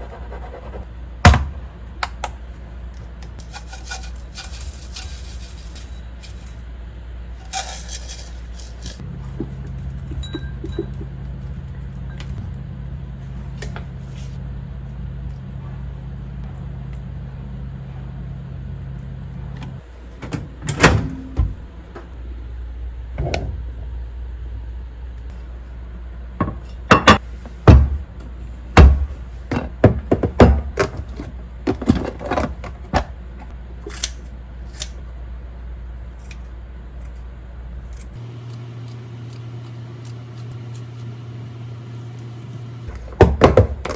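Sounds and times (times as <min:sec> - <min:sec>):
low appliance hum: 0:00.0 - 0:43.9
dishes and utensils clinking: 0:07.4 - 0:09.0, 0:10.1 - 0:11.1.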